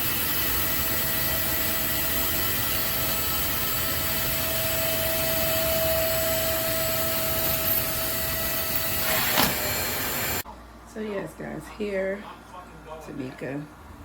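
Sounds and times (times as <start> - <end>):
vacuum cleaner motor running: 0.0 - 10.4.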